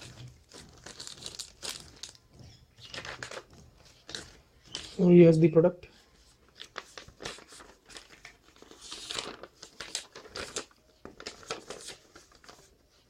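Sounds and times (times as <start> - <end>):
wrapping clicks: 0.0 - 2.2
packaging crinkling and rustling: 0.0 - 5.0, 6.4 - 12.8.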